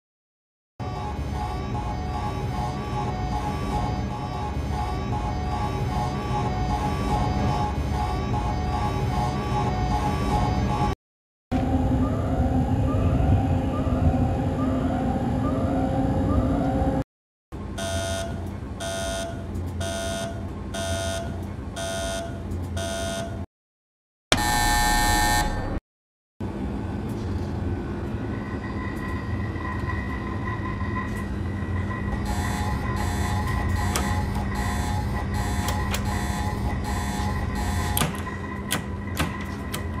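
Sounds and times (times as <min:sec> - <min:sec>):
continuous high tone: 0:00.8 - 0:11.0, 0:28.1 - 0:39.1
loud buzzer blast: 0:17.8 - 0:23.4, 0:24.3 - 0:25.8, 0:32.2 - 0:38.4
steady electrical hum: 0:30.4 - 0:39.0
electronic beeping tone: 0:32.2 - 0:38.0.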